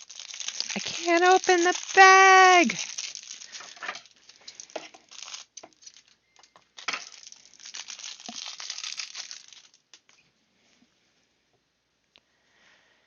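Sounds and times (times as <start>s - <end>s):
plastic bag crinkling: 0.0s - 10.2s.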